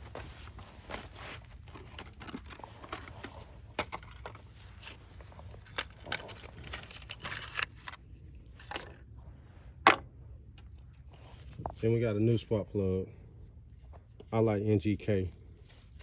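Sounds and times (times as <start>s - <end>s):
rustling: 0.0s - 8.0s.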